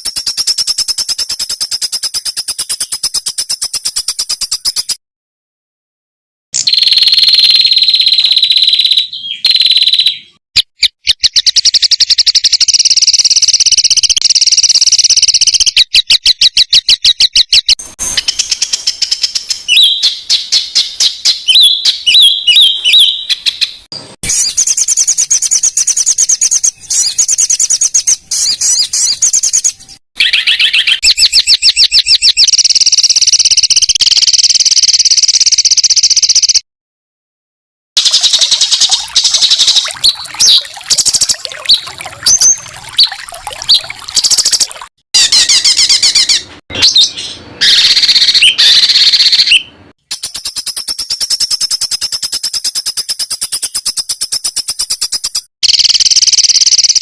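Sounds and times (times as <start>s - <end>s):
songbirds trilling: 18.1s - 32.1s, 38.1s - 50.6s.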